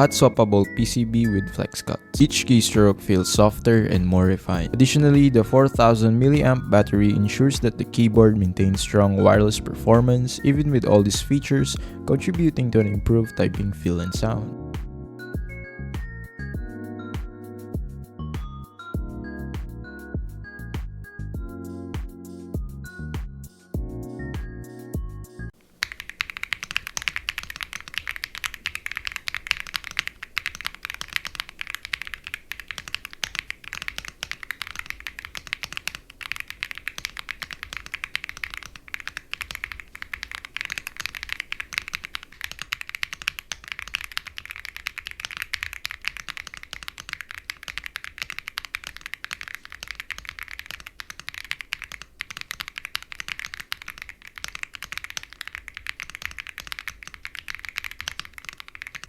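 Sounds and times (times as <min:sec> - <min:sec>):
fast mechanical keyboard typing: 0:02.2 - 0:14.4, 0:25.7 - 0:59.0.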